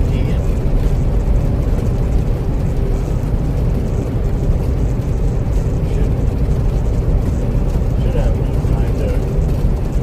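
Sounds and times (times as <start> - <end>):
road noise: 0.0 - 10.0
semi truck engine rumble: 0.0 - 10.0.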